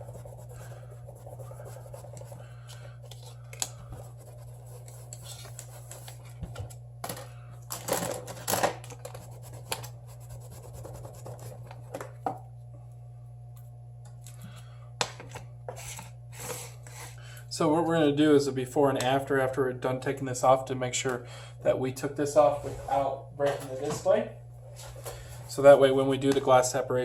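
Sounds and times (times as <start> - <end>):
steady low hum: 0.0 - 27.0
scraping and scratching: 3.1 - 6.5.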